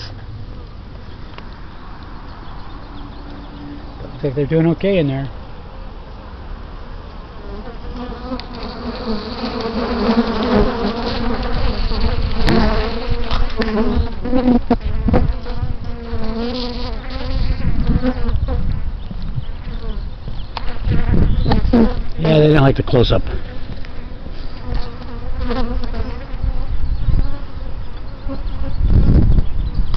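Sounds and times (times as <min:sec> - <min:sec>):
bees buzzing loudly: 0:07.4 - 0:18.8, 0:19.4 - 0:28.9.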